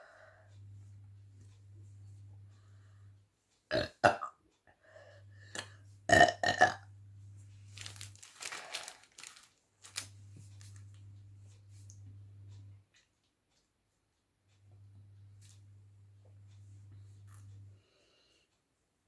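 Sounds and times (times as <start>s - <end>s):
woman burping: 3.7s - 4.4s, 5.6s - 6.9s
breathy noise: 7.7s - 9.5s.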